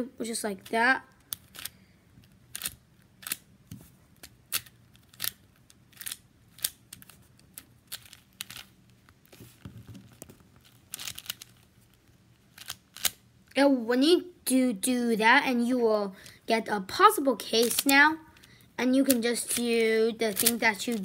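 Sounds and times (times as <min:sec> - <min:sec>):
plastic puzzle cube clicking: 0:01.2 - 0:03.5, 0:04.2 - 0:08.7, 0:10.2 - 0:11.6, 0:12.5 - 0:13.2, 0:17.6 - 0:18.5, 0:20.3 - 0:21.0.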